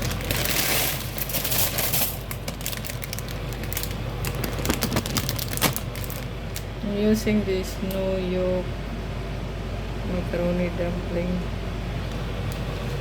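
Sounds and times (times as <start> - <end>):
plastic bag crinkling: 0.0 - 6.7.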